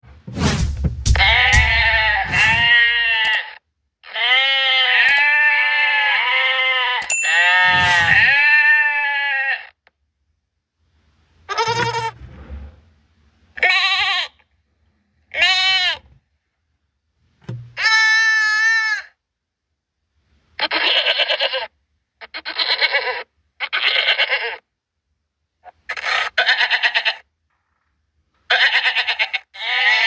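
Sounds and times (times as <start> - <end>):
goats bleating: 1.1 - 9.7, 11.5 - 12.2, 17.8 - 19.1, 25.9 - 27.2, 28.5 - 30.0.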